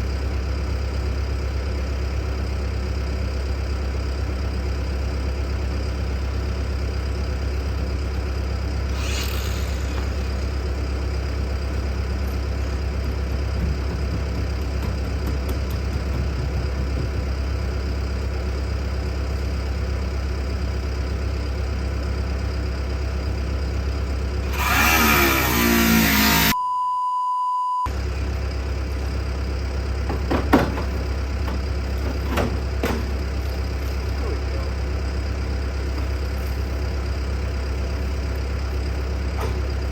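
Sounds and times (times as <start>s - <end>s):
motor engine idling: 0.0s - 24.6s, 27.9s - 39.9s
steady beep: 26.6s - 27.9s.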